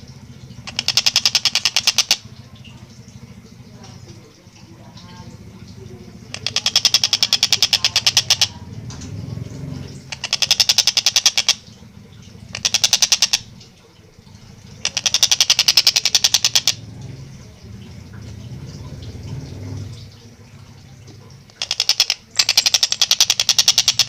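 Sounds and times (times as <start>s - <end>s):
kingfisher chattering call: 6.3s - 8.6s, 14.8s - 16.8s, 21.5s - 24.0s.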